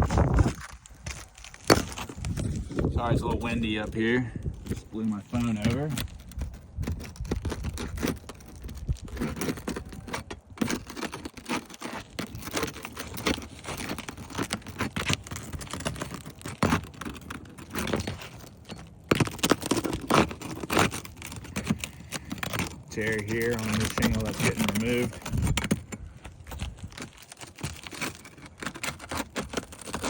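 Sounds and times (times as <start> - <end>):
wind buffeting microphone: 0.0 - 1.2, 2.1 - 10.2, 23.4 - 27.0
scraping and crackling of shingles: 0.0 - 30.0.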